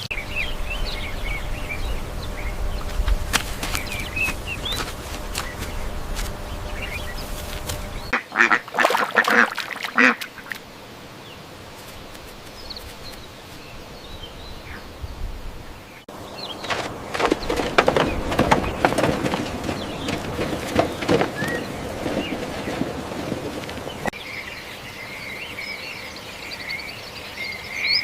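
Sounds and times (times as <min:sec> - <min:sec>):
small birds chirping: 0:00.0 - 0:28.0
low steady rumble: 0:00.1 - 0:08.1
duck quacking: 0:06.6 - 0:10.6.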